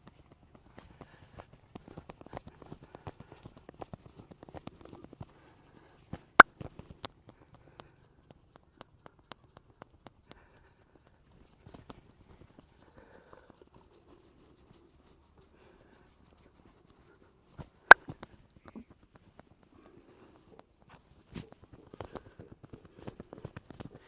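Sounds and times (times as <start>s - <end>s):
hands rubbing skin: 7.4s - 18.2s, 19.8s - 24.0s.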